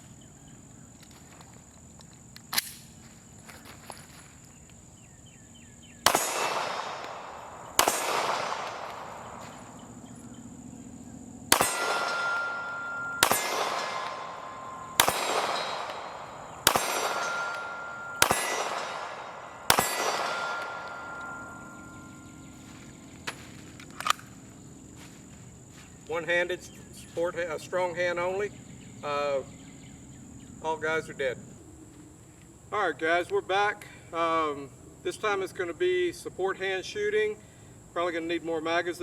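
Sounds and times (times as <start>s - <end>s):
pistol shots: 6.0s - 9.8s, 11.5s - 22.4s
steel targets ringing: 11.5s - 22.5s.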